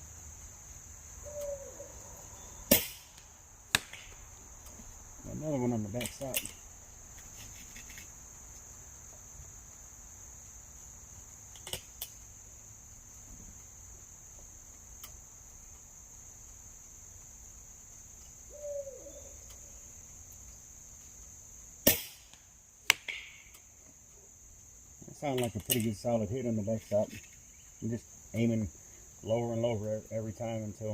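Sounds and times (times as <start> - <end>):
crickets chirping: 0.0 - 30.9
air rifle firing: 2.7 - 4.2, 21.8 - 23.4.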